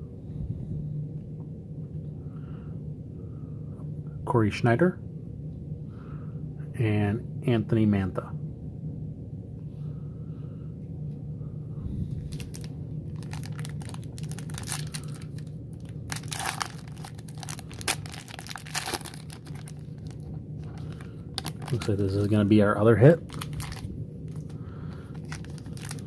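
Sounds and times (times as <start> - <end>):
card pack wrapper crinkling: 12.2 - 22.4, 23.1 - 26.0.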